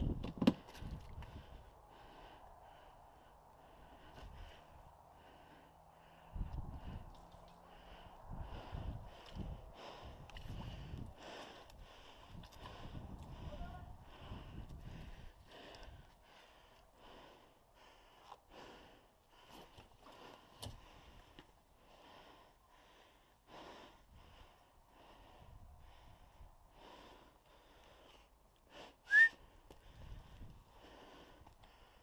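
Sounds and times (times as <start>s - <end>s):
person breathing: 1.3s - 32.0s
whistle-like squeal: 29.1s - 29.4s.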